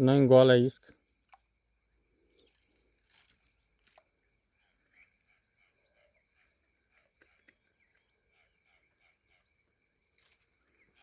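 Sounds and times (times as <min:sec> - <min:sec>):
insect chirring: 0:00.0 - 0:11.0
faint ticks: 0:00.8 - 0:01.5, 0:06.9 - 0:07.8.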